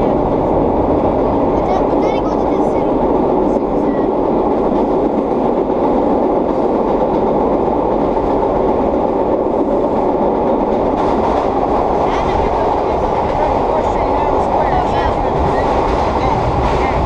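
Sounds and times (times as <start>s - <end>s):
subway wheels rumbling on rail: 0.0s - 17.0s.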